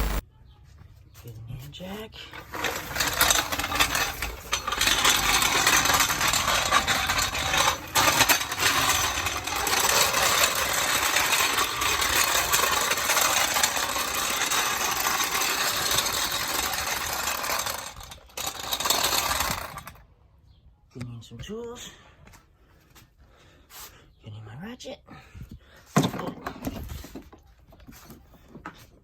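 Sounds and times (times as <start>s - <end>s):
metal gear rattling: 2.3s - 20.0s.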